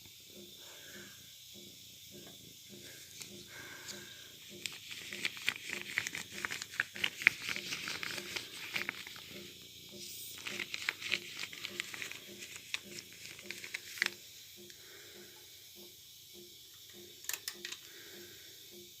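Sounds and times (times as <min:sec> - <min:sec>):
crinkly material being handled: 0:04.5 - 0:09.4, 0:10.3 - 0:14.2.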